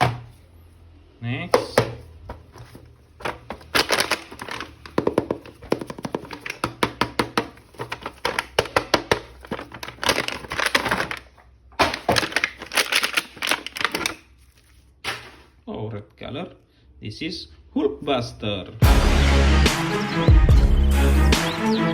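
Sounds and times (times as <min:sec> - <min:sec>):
plastic packaging crinkling: 0:02.6 - 0:15.6.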